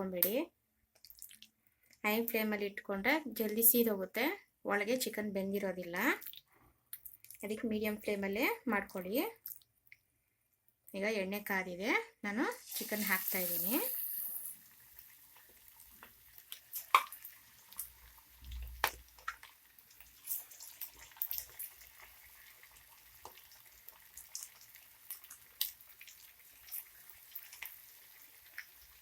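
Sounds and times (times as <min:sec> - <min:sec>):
chicken frying with pops and crackles: 0:12.4 - 0:29.0.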